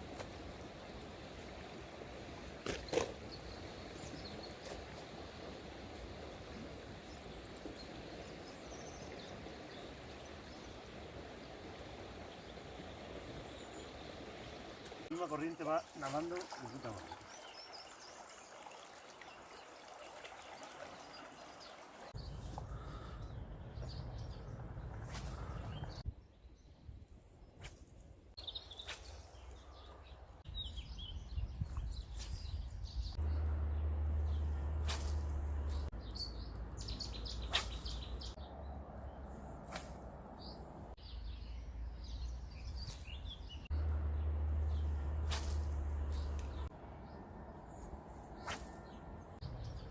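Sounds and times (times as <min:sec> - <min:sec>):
small birds chirping: 0:00.1 - 0:49.9
steady low rumble: 0:22.2 - 0:26.1, 0:43.6 - 0:48.4.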